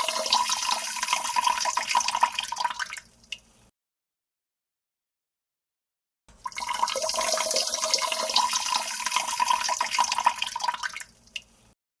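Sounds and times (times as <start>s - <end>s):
urine stream into toilet: 0.0s - 3.7s, 6.4s - 11.8s
water drip: 0.0s - 3.7s, 6.4s - 11.8s.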